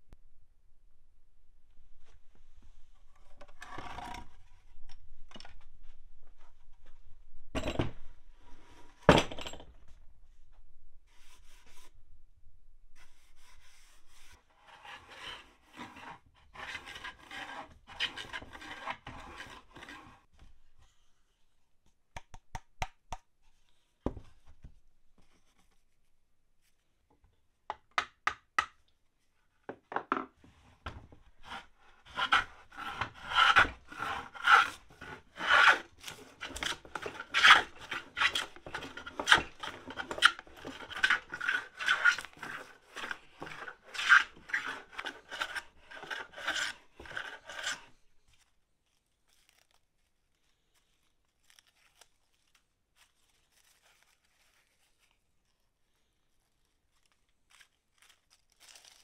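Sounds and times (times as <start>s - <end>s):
hand plane shaving wood: 13.6s - 20.2s, 31.4s - 47.9s.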